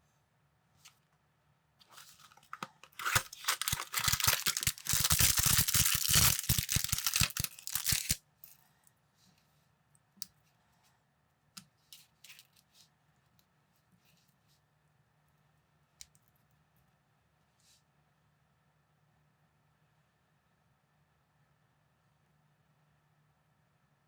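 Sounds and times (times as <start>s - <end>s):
plastic bag tearing and crinkling: 1.9s - 8.2s
small plastic pieces clicking: 2.4s - 8.2s.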